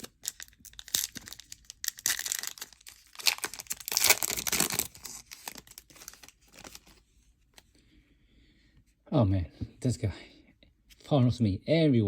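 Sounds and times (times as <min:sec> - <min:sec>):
wrapper being torn and crinkled: 0:00.0 - 0:06.9.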